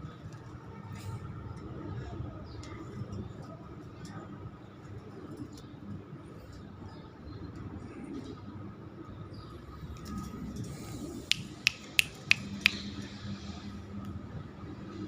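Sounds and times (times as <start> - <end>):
short sharp clicks: 11.3 - 12.9.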